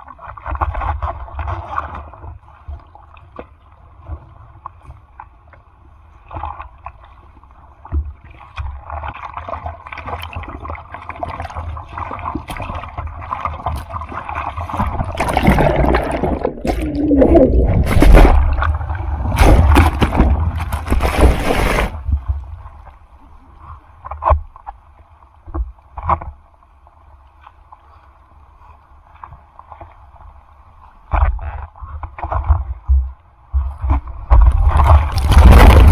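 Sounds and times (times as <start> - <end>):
ocean water rushing and splashing: 10.0 - 22.2, 34.5 - 35.9.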